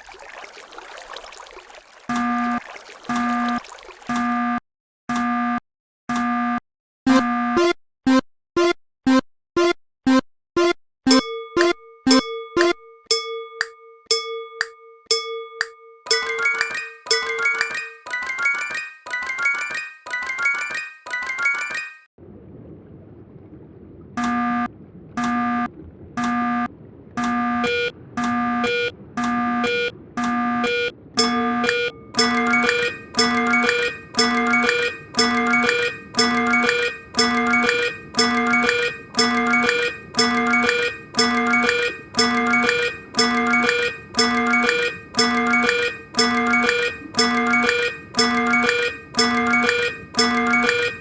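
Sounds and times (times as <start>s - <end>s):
glockenspiel-like music run: 11.1s - 22.1s, 27.6s - 27.9s, 28.6s - 28.9s, 29.6s - 29.9s, 30.6s - 51.0s
low steady rumble: 22.2s - 31.9s
railroad crossing warning beeps: 27.2s - 51.0s.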